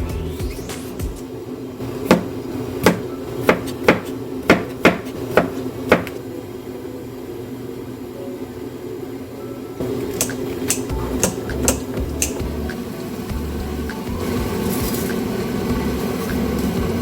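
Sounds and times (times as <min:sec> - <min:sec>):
knife chopping on cutting board: 0:02.0 - 0:06.2.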